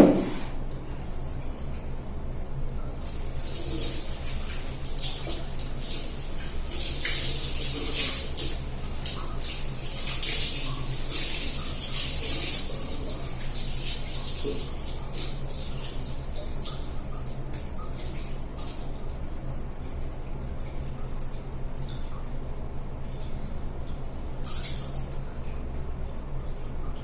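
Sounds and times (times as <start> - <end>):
tap water splashing: 0.0 - 0.6, 3.0 - 18.8.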